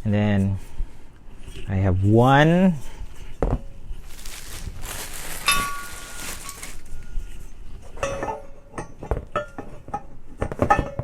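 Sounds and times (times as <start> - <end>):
packaging rustling: 4.0 - 7.2.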